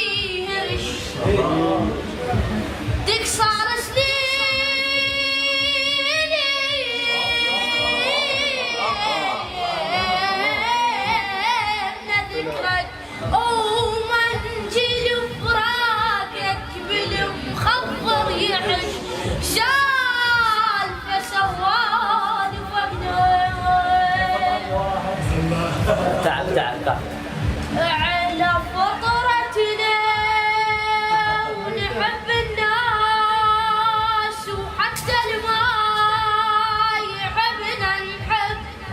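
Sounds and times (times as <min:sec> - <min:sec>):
music with low beats: 0:00.0 - 0:38.9
high voice singing: 0:02.9 - 0:25.4.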